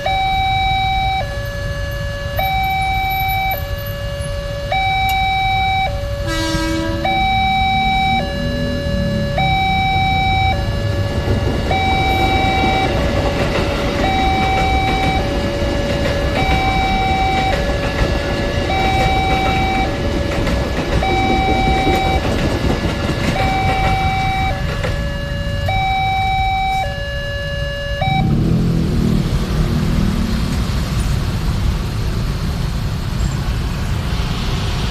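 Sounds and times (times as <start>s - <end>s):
level crossing two-tone siren: 0.0s - 29.3s
vehicle engines rumbling: 0.0s - 34.9s
short horn blast: 6.2s - 7.3s.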